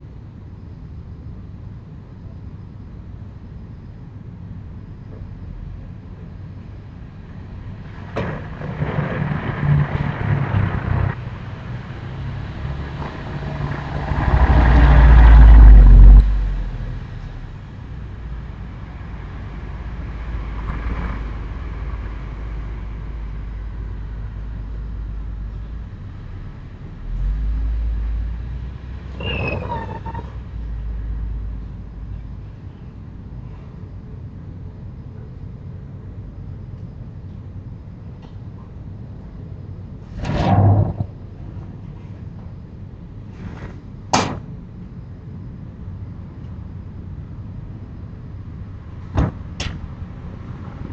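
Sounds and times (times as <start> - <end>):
heavy low rumble: 4.9 - 33.4
road vehicles passing: 5.0 - 37.9, 38.8 - 50.9.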